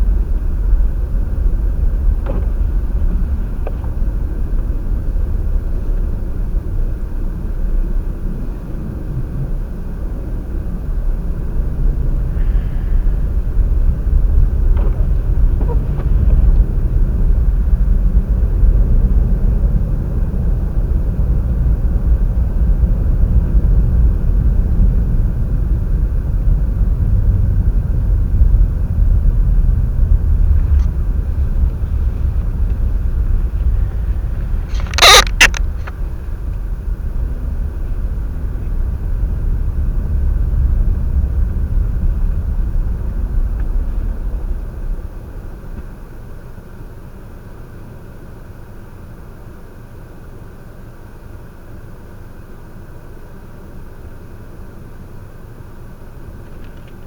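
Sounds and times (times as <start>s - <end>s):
strong wind buffeting microphone: 0.0s - 45.8s
sharp crackle: 34.5s - 36.0s.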